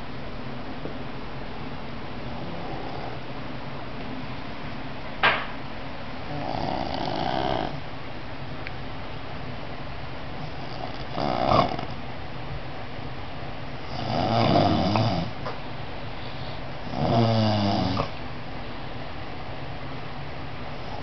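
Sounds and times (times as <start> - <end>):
child snoring: 6.3 - 7.8, 10.7 - 11.9, 13.9 - 15.3, 16.9 - 18.2.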